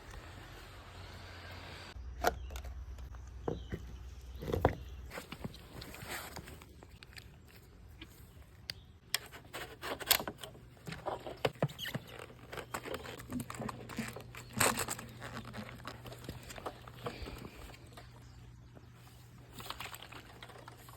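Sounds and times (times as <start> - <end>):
small motor humming: 0.0 - 2.0
handling clicks and knocks: 8.6 - 19.0.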